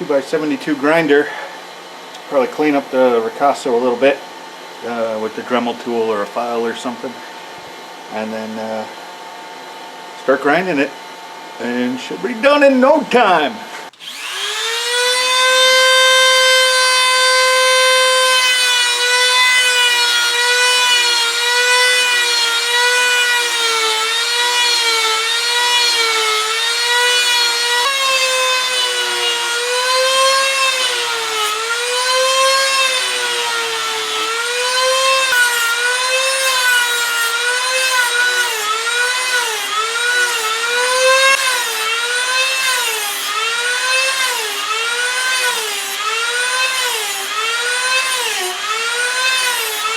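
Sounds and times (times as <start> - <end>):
power grinder whining on steel: 13.9 - 49.9.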